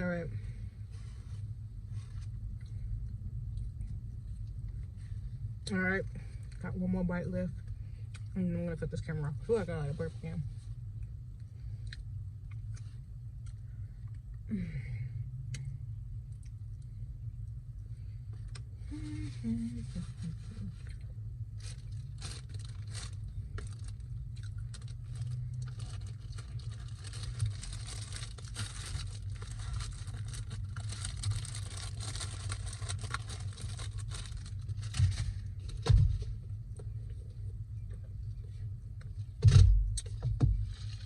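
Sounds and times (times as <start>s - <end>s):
food packaging crinkling: 21.6s - 35.4s.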